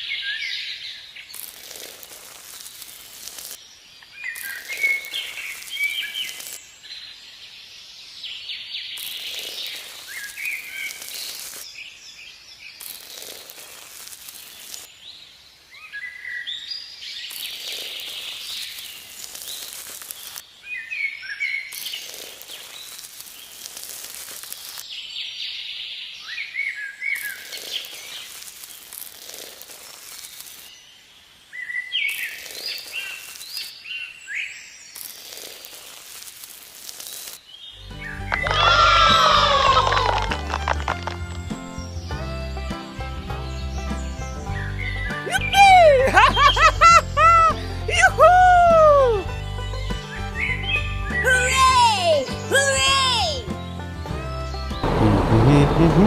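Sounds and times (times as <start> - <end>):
birds chirping: 2.7 - 13.4, 37.4 - 56.0.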